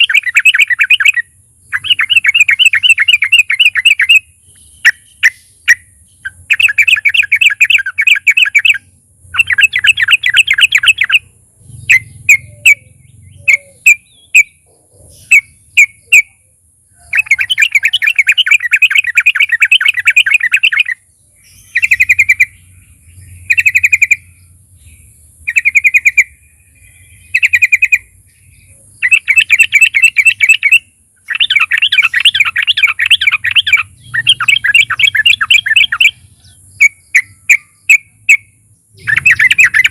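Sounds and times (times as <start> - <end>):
bird chattering trills: 0.0 - 39.9.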